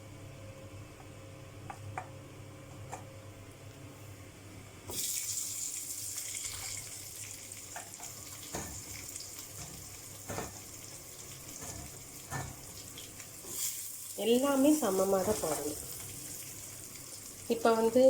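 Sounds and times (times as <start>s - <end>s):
food sizzling in hot fat: 4.9s - 18.0s.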